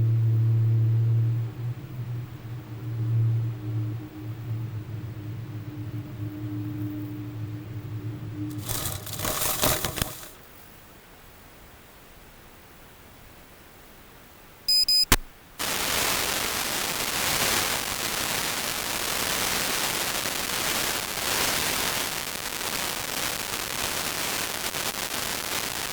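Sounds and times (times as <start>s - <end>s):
high electronic beeps: 14.7s - 15.3s
static hiss: 14.7s - 25.9s
sharp click: 14.9s - 15.3s.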